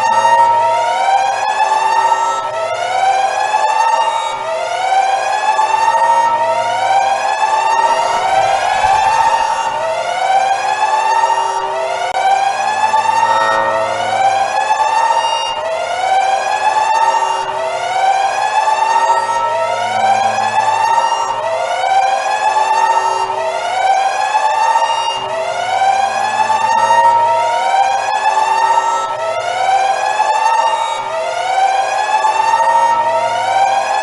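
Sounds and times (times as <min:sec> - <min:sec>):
emergency siren whooping: 0:00.1 - 0:16.2, 0:23.1 - 0:34.0.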